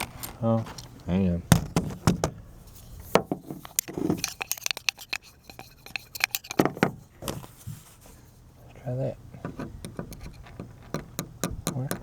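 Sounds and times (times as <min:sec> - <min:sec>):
screwdriver clicking and scraping: 0:03.5 - 0:07.0, 0:09.5 - 0:12.0
small metal parts tapping plastic: 0:09.5 - 0:12.0.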